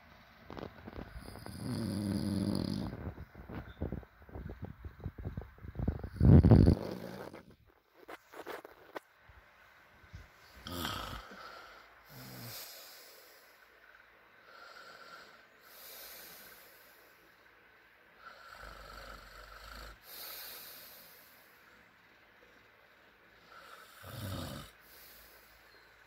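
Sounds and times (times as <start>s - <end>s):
man snoring: 1.2s - 3.1s, 5.8s - 7.5s, 10.6s - 13.6s, 14.4s - 17.0s, 18.2s - 21.4s, 23.4s - 25.4s.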